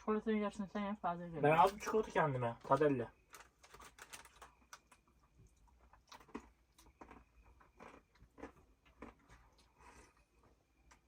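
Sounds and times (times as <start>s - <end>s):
chewing chocolate crunches: 3.2s - 11.0s.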